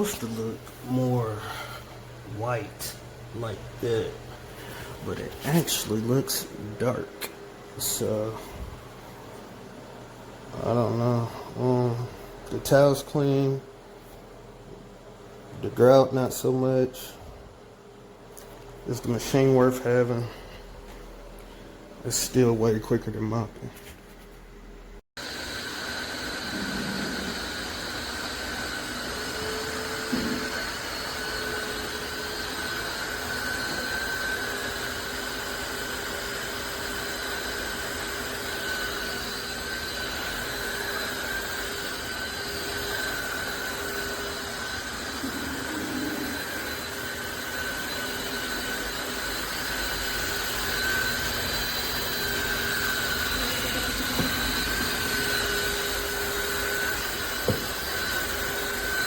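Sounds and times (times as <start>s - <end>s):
vacuum mop motor whine: 7.8s - 9.5s, 25.2s - 59.0s.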